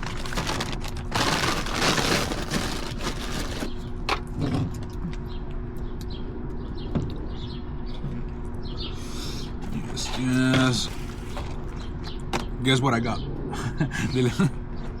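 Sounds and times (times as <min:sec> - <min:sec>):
paper bag rustling: 0:00.0 - 0:04.0
steady low hum: 0:00.0 - 0:15.0.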